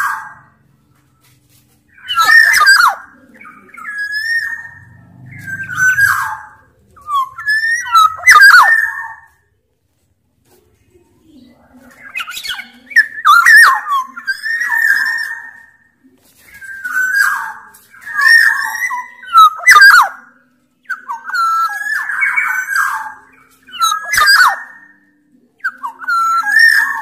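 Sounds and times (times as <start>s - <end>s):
oriole singing fluty whistles: 1.9s - 9.3s, 12.0s - 15.8s, 16.4s - 27.0s
rasping bird calls: 1.9s - 9.3s.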